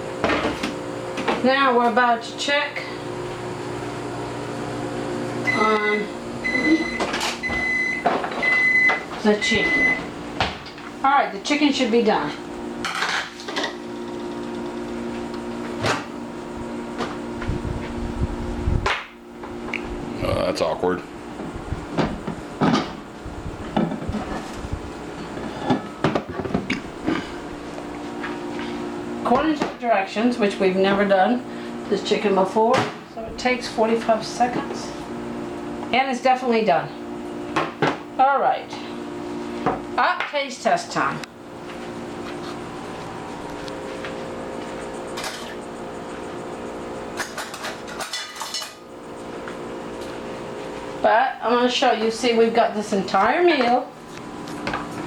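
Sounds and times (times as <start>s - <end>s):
background hum: 0.0s - 55.0s
dishes and utensils clattering: 47.2s - 48.8s.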